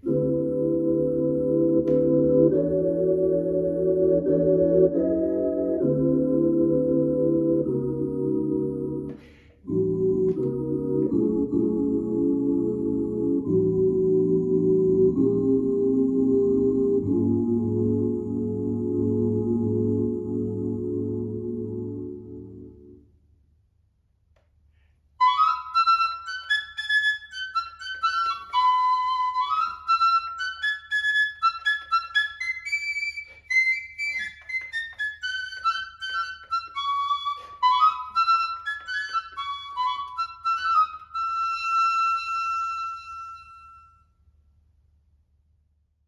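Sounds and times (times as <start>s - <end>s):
digital wind instrument melody: 0.0s - 8.4s, 25.2s - 44.0s.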